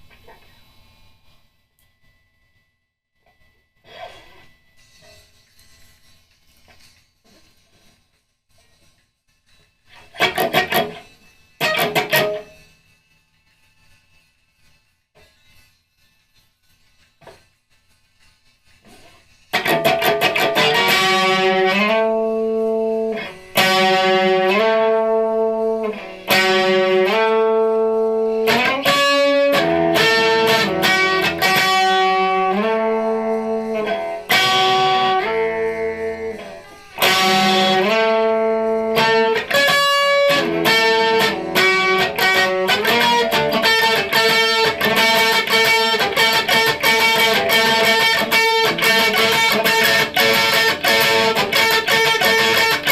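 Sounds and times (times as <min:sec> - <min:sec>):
electric guitar strumming chords: 0:09.9 - 0:12.6, 0:19.5 - 0:52.9.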